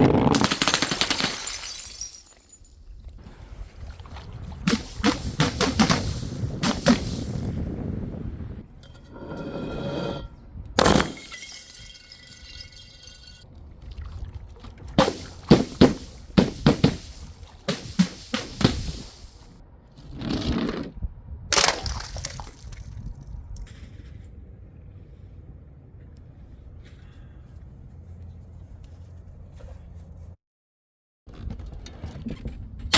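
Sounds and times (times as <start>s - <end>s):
glass bottles smashing: 0.4s - 2.8s, 10.8s - 13.4s
glass ringing: 8.9s - 13.4s.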